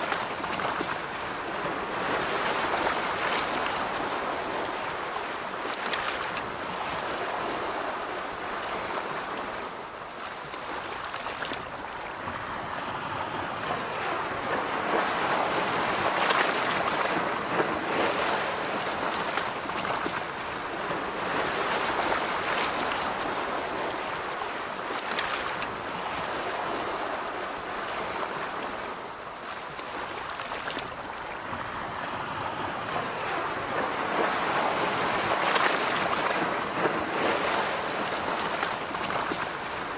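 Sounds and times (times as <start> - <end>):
surf washing onto beach: 0.0 - 39.9.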